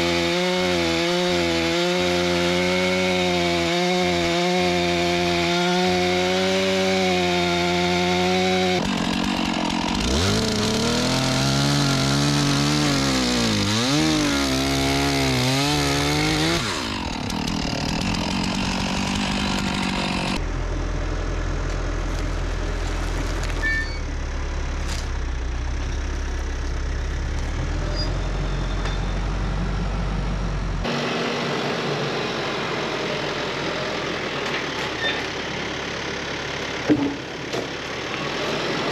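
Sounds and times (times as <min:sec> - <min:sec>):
chainsaw cutting logs: 0:00.0 - 0:20.4, 0:36.0 - 0:38.9
deep steady engine rumble: 0:19.2 - 0:30.9, 0:32.6 - 0:38.9.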